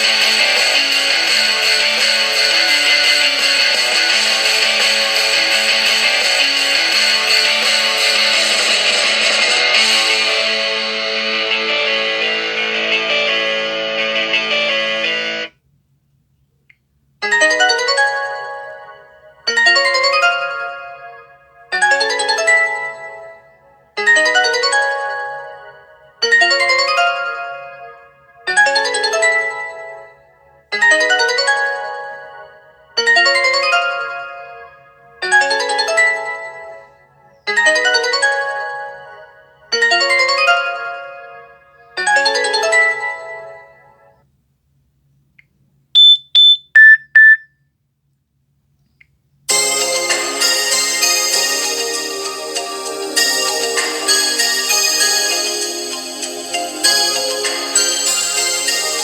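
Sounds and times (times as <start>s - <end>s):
distorted electric guitar tune: 0.0s - 15.5s
phone ringtone melody: 49.5s - 59.0s.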